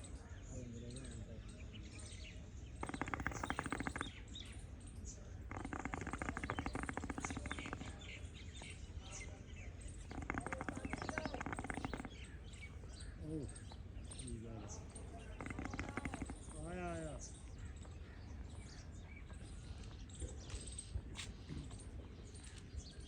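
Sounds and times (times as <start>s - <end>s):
small birds chirping: 0.0s - 23.0s
rapid rattling buzz: 2.8s - 4.2s, 5.5s - 8.1s, 10.1s - 12.3s, 15.1s - 17.0s.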